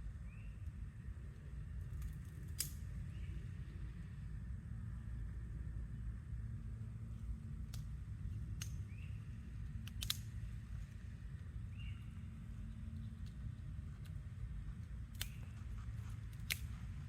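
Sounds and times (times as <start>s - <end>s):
steady low rumble: 0.0s - 17.0s
sharp clicks or snaps: 1.9s - 2.8s, 7.7s - 8.9s, 9.8s - 10.6s, 15.1s - 15.5s, 16.3s - 16.8s
bird chirps: 11.7s - 13.4s.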